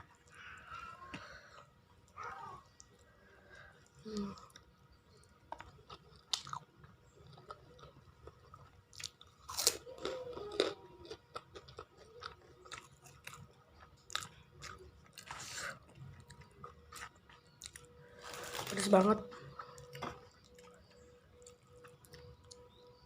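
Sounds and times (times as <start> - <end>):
chewing and crunching food: 0.0 - 23.0.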